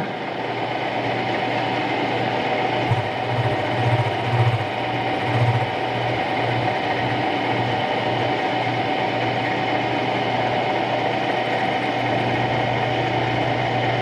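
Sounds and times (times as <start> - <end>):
milling machine motor hum: 0.0 - 14.0
cutter pulsing low hum: 2.8 - 8.3.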